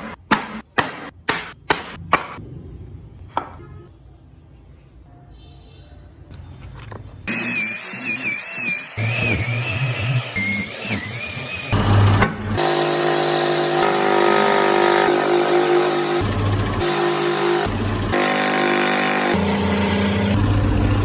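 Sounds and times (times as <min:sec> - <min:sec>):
power tool motor whine: 0:07.3 - 0:16.2, 0:16.8 - 0:20.6
steady motor drone: 0:11.6 - 0:21.0.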